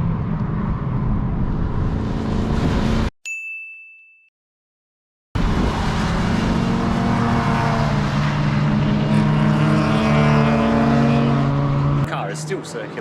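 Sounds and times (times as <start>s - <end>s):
race car engine at high revs: 0.4s - 3.1s, 5.4s - 13.0s.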